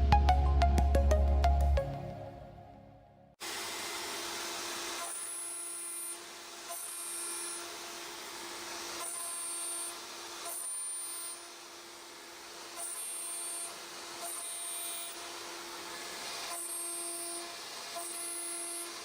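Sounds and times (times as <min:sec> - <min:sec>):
intro music: 0:00.0 - 0:03.4
cnc router hiss and hum: 0:03.4 - 0:19.0.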